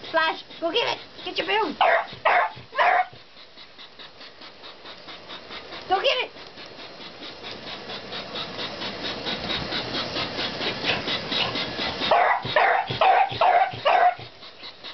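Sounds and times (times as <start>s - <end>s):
toy train clicking on track: 0.0s - 14.9s
dog barking: 1.8s - 3.2s, 12.1s - 14.3s.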